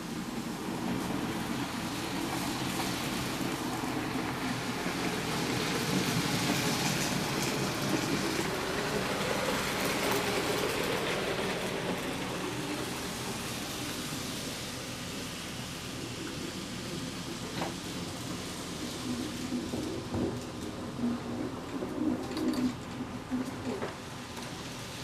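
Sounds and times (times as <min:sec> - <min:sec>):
model train wheels rumbling on rails: 0:00.0 - 0:25.0.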